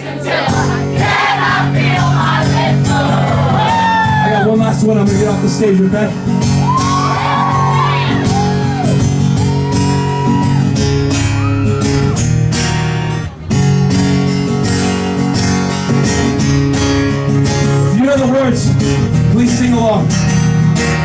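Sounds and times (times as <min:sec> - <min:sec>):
acoustic guitar strumming: 0:00.0 - 0:21.0
crowd cheering and shrieking: 0:00.4 - 0:04.6, 0:06.4 - 0:13.3.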